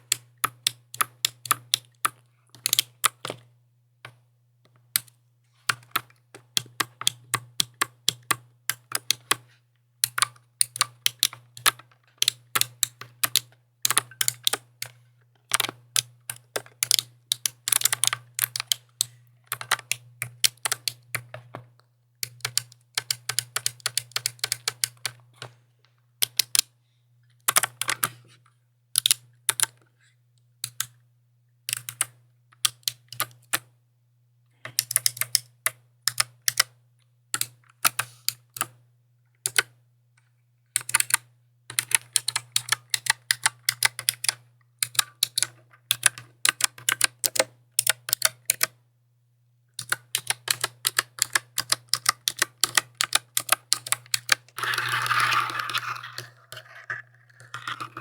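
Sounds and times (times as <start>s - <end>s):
mechanical keyboard typing: 0.0s - 3.4s, 5.0s - 9.4s, 10.0s - 21.4s, 22.2s - 25.2s, 26.2s - 26.7s, 27.5s - 28.1s, 29.0s - 29.8s, 30.6s - 30.9s, 31.7s - 33.7s, 34.7s - 36.8s, 37.4s - 38.8s, 39.4s - 39.7s, 40.8s - 48.8s, 49.8s - 58.0s.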